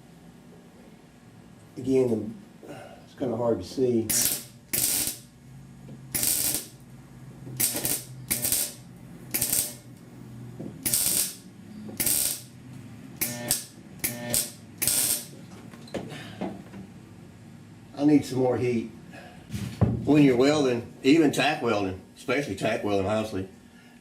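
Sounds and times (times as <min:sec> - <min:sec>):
low steady hum: 0:00.0 - 0:24.0
welding arc crackling bursts: 0:04.1 - 0:05.3, 0:06.1 - 0:06.8, 0:07.6 - 0:10.0, 0:10.8 - 0:12.6, 0:13.2 - 0:15.4.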